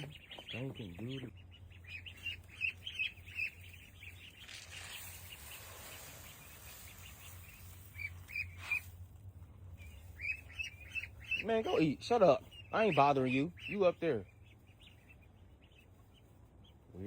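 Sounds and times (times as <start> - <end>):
ducklings peeping: 0.0 - 17.0
rustling noise: 4.3 - 9.7.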